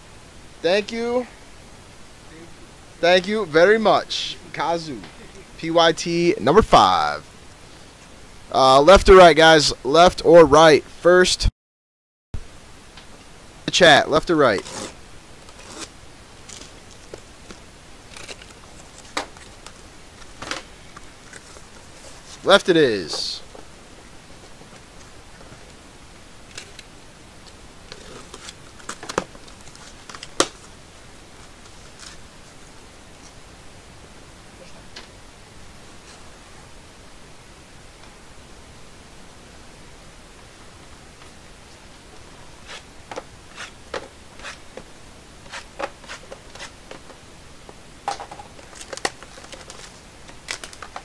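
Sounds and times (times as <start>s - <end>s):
packaging clicks and rustles: 14.6s - 22.4s, 27.9s - 30.7s, 48.1s - 51.0s
packaging snaps: 48.6s - 51.0s.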